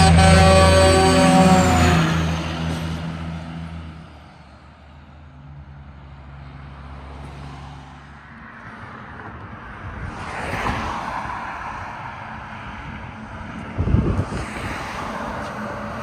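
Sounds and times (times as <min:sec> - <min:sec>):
truck horn: 0:00.0 - 0:04.0
faint low engine drone: 0:00.0 - 0:04.1
truck engine driving off: 0:00.0 - 0:04.4.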